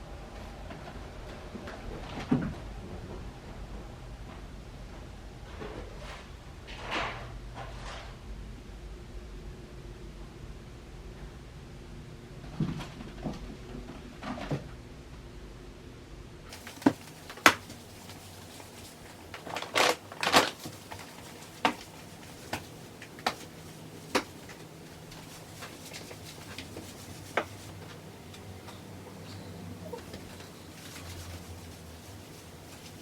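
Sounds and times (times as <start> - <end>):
low hum: 0.0 - 14.2.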